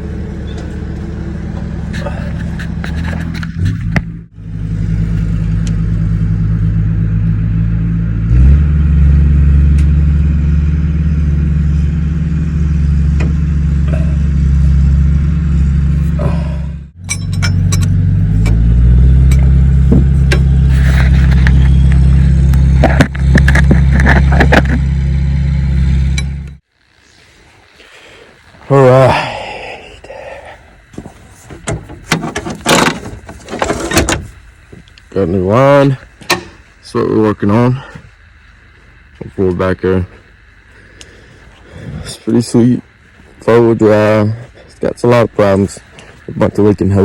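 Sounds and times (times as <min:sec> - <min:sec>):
vehicle engine droning: 0:00.0 - 0:47.0
light clinks and rattles: 0:17.0 - 0:18.6.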